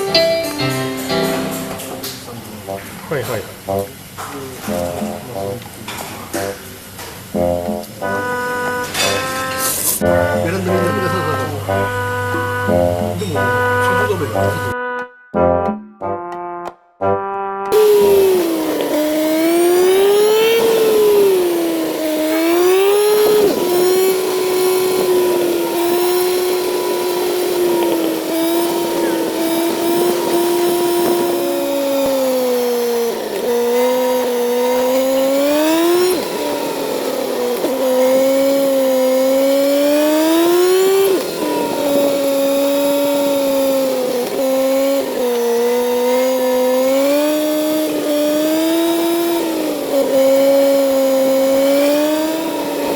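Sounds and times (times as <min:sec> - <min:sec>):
motorcycle engine revving: 0:02.0 - 0:14.8, 0:17.7 - 0:52.9.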